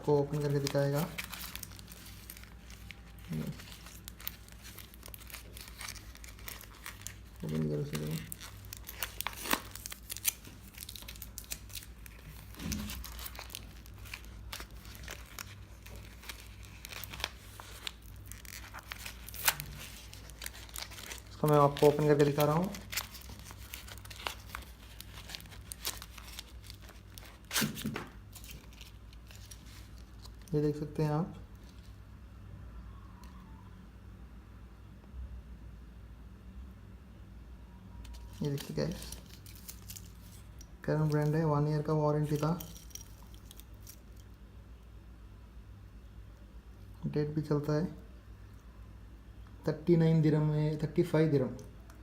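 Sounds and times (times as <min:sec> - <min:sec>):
packaging crinkling: 0:00.0 - 0:30.6, 0:38.1 - 0:44.4.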